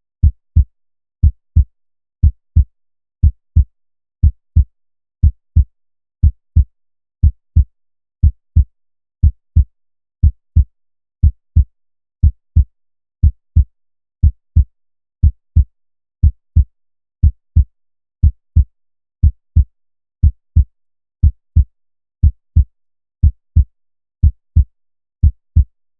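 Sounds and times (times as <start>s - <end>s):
heartbeat thumps: 9.2s - 22.6s.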